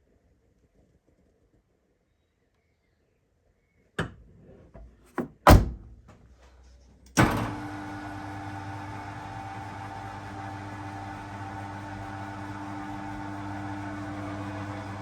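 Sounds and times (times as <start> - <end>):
car door shutting: 7.2 - 7.6
car engine starting and idling: 7.2 - 15.0.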